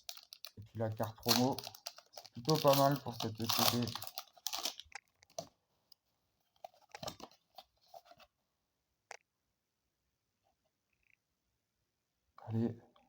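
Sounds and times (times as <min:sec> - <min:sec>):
foil pack crinkling: 0:00.0 - 0:05.4.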